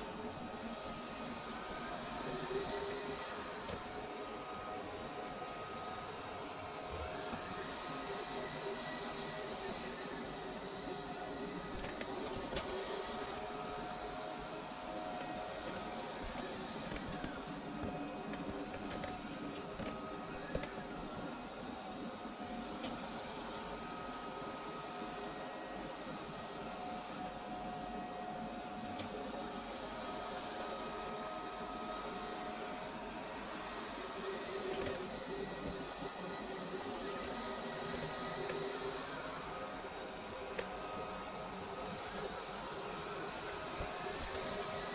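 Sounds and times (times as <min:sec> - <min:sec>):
robot vacuum motor hum: 0:28.9 - 0:44.9.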